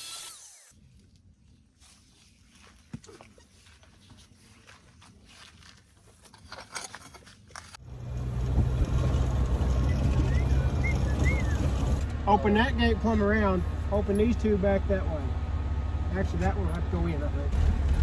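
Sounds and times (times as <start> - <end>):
faint clicks and scrapes: 1.0 - 7.8
tractor engine droning: 7.8 - 18.0.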